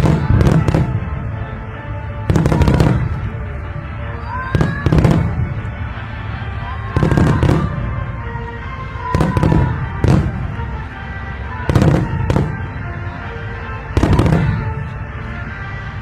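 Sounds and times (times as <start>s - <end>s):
fireworks booms and bangs: 0.0s - 1.3s, 2.2s - 3.4s, 4.5s - 5.7s, 6.9s - 8.0s, 9.1s - 10.6s, 11.6s - 12.8s, 13.9s - 14.9s
background music: 0.0s - 16.0s.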